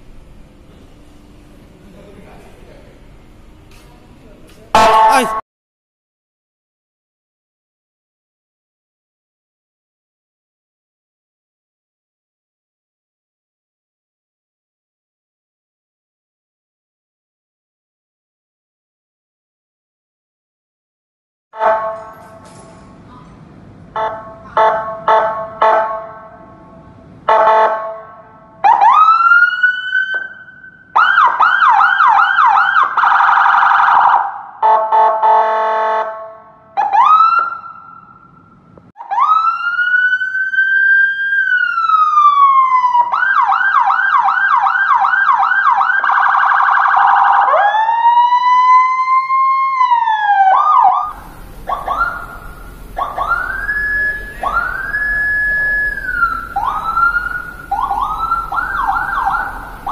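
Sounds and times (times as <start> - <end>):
buzzing horn blasts: 4.8 - 5.4, 21.6 - 22.4, 23.9 - 28.5, 34.6 - 36.5, 51.1 - 59.9
electronic siren wailing: 4.8 - 5.4, 39.0 - 59.9
siren yelp warbling: 4.8 - 5.4, 36.8 - 38.3, 39.0 - 59.9
siren rising whoops: 39.0 - 59.9.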